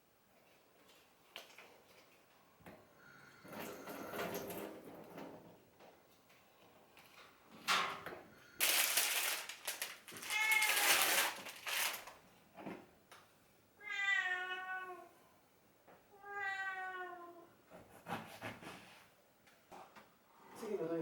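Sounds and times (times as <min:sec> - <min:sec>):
scratchy rustling: 0:08.6 - 0:12.2
cat meowing: 0:10.1 - 0:11.4, 0:13.8 - 0:15.1, 0:16.1 - 0:17.5.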